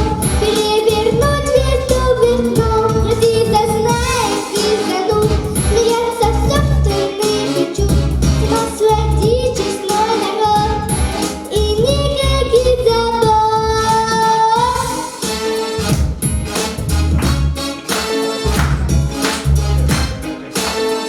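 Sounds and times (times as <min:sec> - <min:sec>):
girl singing pop song: 0:00.0 - 0:15.2
backing track with bass beat: 0:00.0 - 0:21.0.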